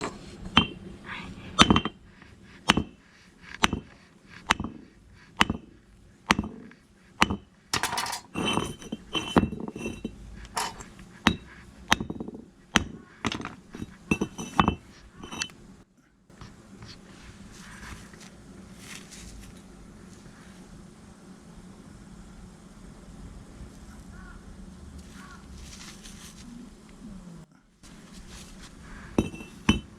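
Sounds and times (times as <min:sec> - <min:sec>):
hard objects clinking: 0:07.8 - 0:15.5, 0:29.2 - 0:29.9
faint steady hiss: 0:13.6 - 0:29.9.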